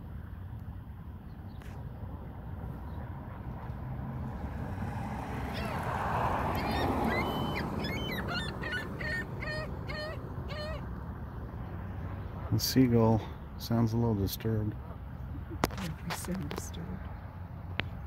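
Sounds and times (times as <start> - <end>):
seagull calling: 5.4 - 10.9.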